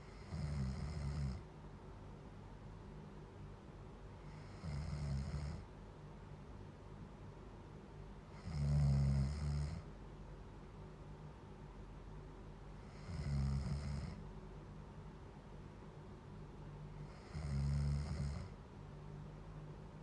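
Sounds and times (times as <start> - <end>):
person snoring: 0.0 - 1.4, 4.2 - 5.6, 8.3 - 9.8, 12.8 - 14.2, 17.0 - 18.5.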